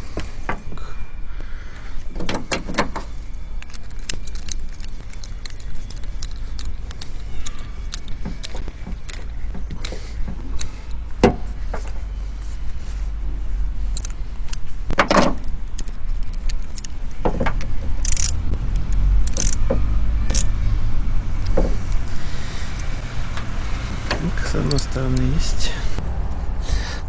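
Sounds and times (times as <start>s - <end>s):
metal tools clinking and knocking: 2.1s - 12.2s, 13.8s - 18.4s
steady low rumble: 2.8s - 27.0s.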